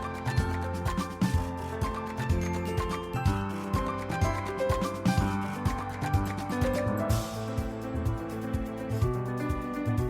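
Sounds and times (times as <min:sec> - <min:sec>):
music with heavy bass and beat: 0:00.0 - 0:10.0.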